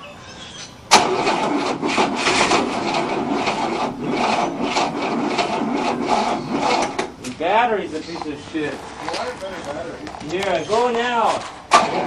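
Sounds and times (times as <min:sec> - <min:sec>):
starter motor cranking: 0:00.9 - 0:07.4.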